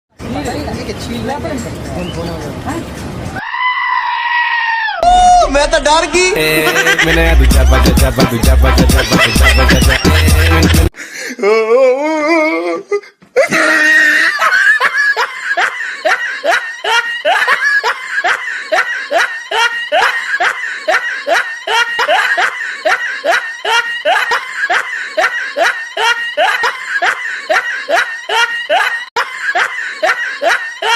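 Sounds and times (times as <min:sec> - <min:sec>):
snickering laughter: 0:06.6 - 0:08.0, 0:08.9 - 0:10.9, 0:13.4 - 0:30.9.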